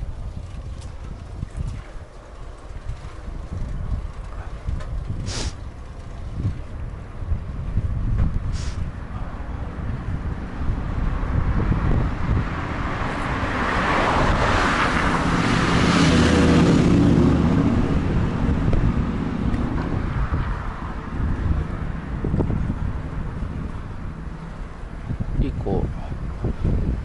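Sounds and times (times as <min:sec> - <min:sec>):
wind rumbling on microphone: 0:00.0 - 0:27.0
car passing by: 0:08.5 - 0:25.2.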